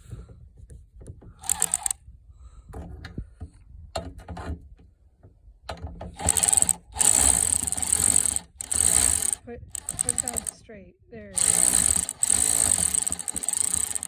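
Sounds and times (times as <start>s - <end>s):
mechanical clicks: 1.4s - 2.0s, 6.2s - 10.6s, 11.4s - 14.0s
power ratchet running: 1.4s - 2.0s, 6.2s - 10.6s, 11.4s - 14.0s.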